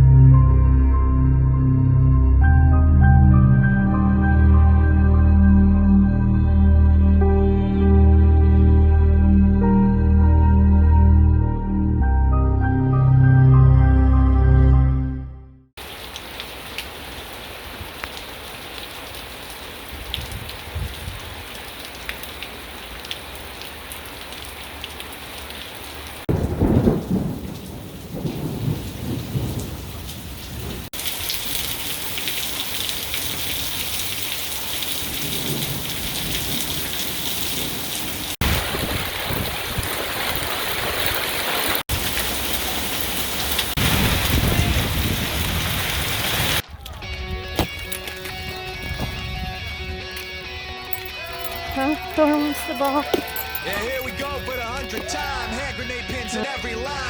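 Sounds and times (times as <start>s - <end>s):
heavy rain hissing: 15.8s - 46.6s
deep thunder rumbling: 26.3s - 30.9s, 37.6s - 46.6s.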